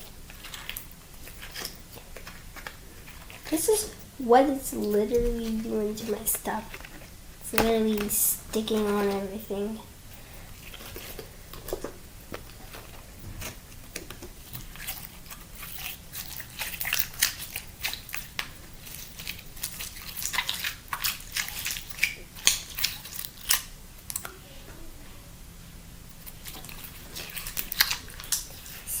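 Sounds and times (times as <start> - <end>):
slime wet clicking and popping: 20.2 - 24.4.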